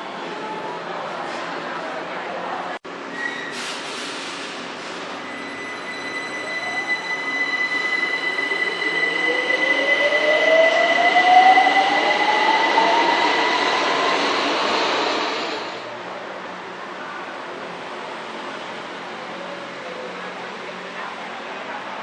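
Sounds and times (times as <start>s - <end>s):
steady high-pitched tone: 5.3s - 15.9s
electric train motor whine rising: 8.1s - 15.8s.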